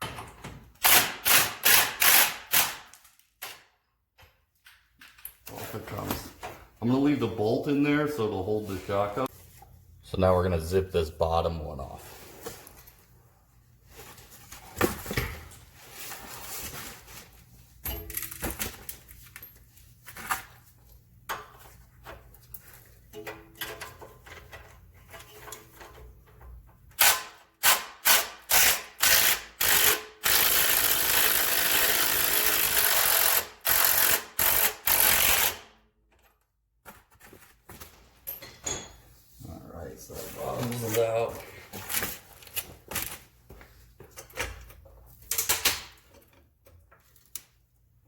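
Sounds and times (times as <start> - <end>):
impact wrench hammering: 0.8 - 2.9, 27.0 - 35.7
clicks and knocks of tool handling: 21.2 - 26.8.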